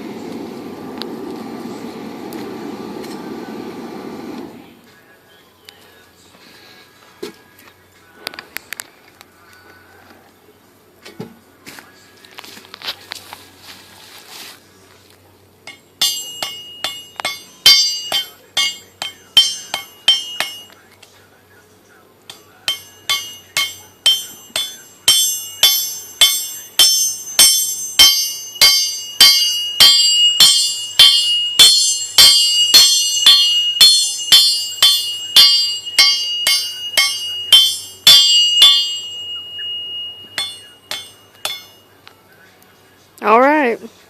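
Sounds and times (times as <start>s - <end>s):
hammer striking steel on anvil: 15.6s - 20.9s, 22.3s - 42.0s.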